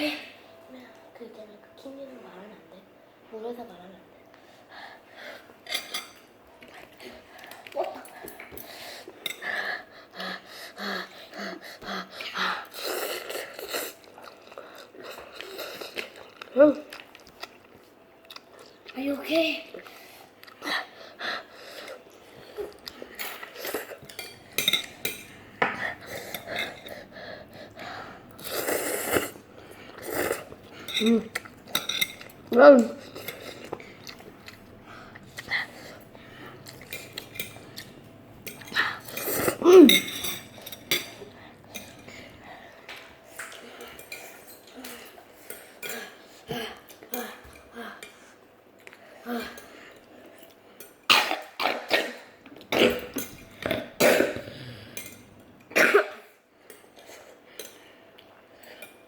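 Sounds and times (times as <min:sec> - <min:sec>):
utensils clinking against bowl: 0:05.6 - 0:06.8, 0:22.8 - 0:27.1, 0:28.4 - 0:34.6, 0:35.4 - 0:48.2, 0:52.6 - 0:57.9.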